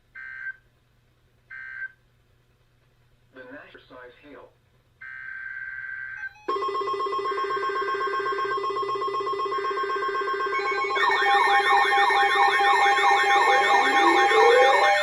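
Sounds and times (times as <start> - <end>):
electronic emergency alert tones: 5.0 - 15.0
siren-like wailing sweeps: 9.8 - 15.0.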